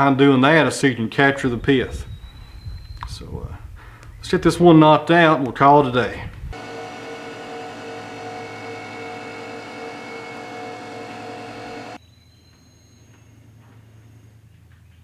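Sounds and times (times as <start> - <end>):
bandsaw mill humming: 6.5 - 12.0.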